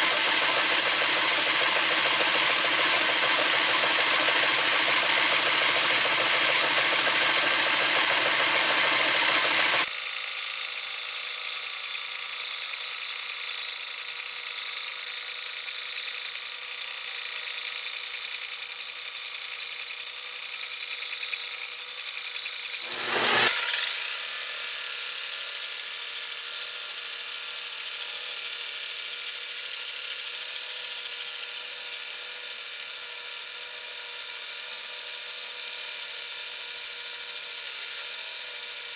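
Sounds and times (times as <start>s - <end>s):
band sawmill whining: 0.0s - 9.8s, 22.8s - 25.5s.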